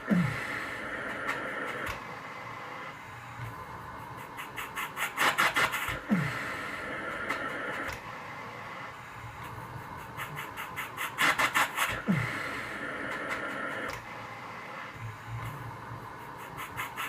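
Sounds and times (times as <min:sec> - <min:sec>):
fast air pulsing: 0:00.0 - 0:17.0
cough assist machine air hiss: 0:04.2 - 0:08.0, 0:10.0 - 0:14.0.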